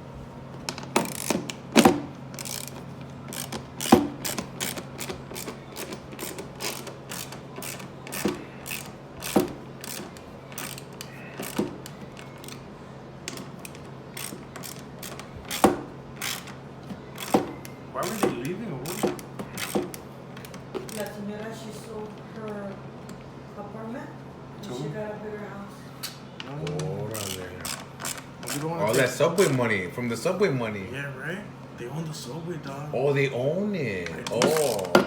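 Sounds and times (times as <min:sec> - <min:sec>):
hand ratchet clicking: 0:00.9 - 0:12.6, 0:13.3 - 0:16.6, 0:17.2 - 0:21.1, 0:27.2 - 0:28.7.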